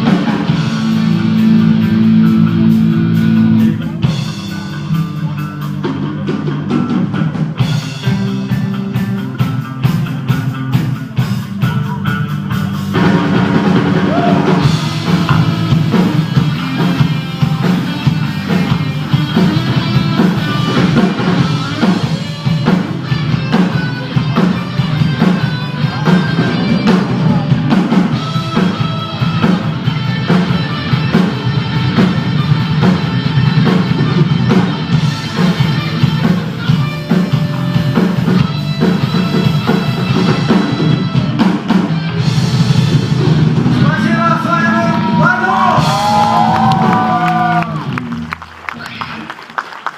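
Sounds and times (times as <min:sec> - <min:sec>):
rock music with drums and guitar: 0:00.0 - 0:48.4.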